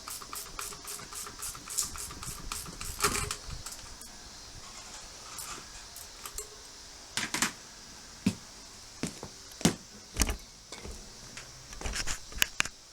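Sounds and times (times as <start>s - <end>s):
metal tools clinking and knocking: 5.3s - 6.7s.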